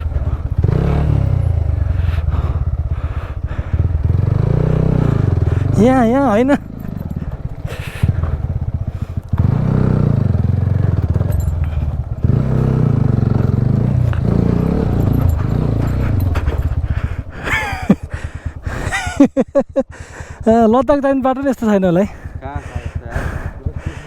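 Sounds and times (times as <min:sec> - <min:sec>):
motorcycle engine at low revs: 0:00.0 - 0:24.0
person exclaiming: 0:05.6 - 0:06.6.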